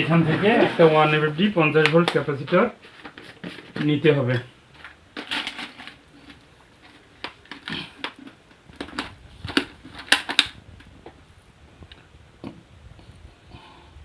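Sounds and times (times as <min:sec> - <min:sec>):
electronic components clattering: 0:00.0 - 0:11.2.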